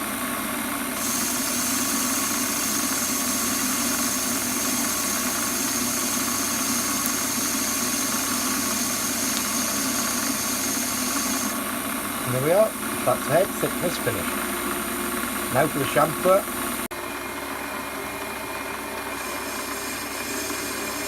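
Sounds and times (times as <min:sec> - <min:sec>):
lathe motor hum: 0:00.0 - 0:21.0
high hiss of cutting: 0:01.0 - 0:11.6, 0:19.2 - 0:21.0.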